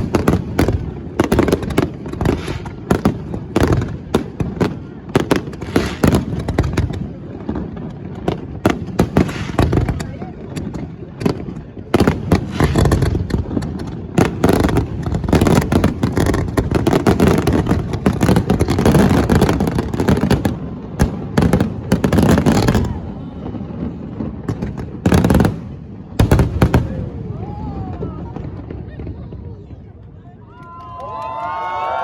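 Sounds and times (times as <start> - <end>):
fireworks bangs and crackling: 0.0 - 30.4.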